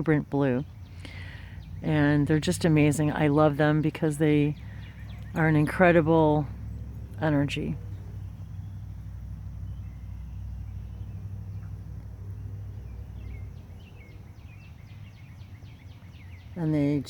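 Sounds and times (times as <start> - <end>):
low background rumble: 0.0 - 17.0
songbird whistling: 13.2 - 16.6.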